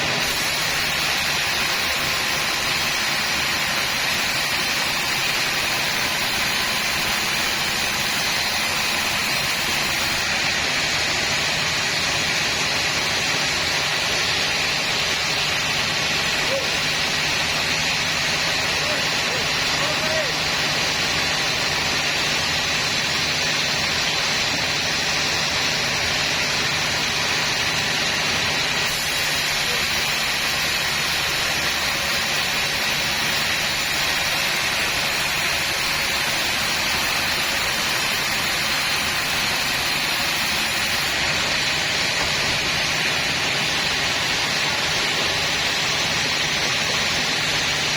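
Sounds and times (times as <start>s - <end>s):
sawmill saw running: 0.0s - 47.9s.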